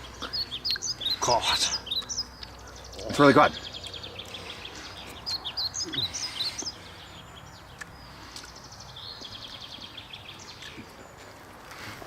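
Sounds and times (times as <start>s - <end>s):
bird trilling: 0.0s - 7.2s
outdoor background noise: 0.0s - 12.0s
songbirds chirping: 0.0s - 12.0s.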